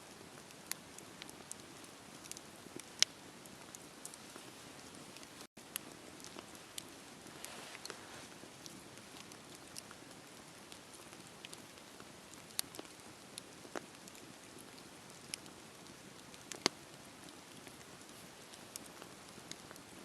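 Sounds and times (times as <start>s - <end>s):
bonfire crackling: 0.1s - 20.0s.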